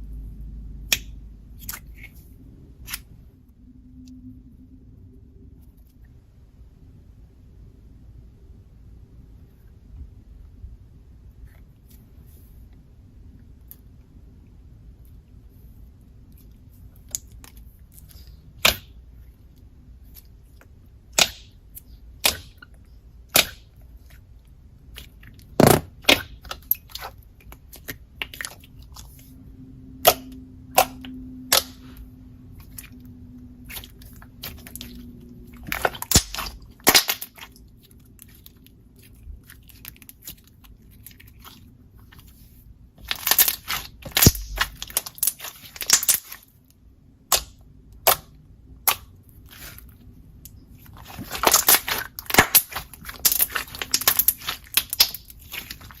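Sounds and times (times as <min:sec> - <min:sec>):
slime squeezed by hand: 0:33.6 - 0:37.6, 0:43.0 - 0:46.4.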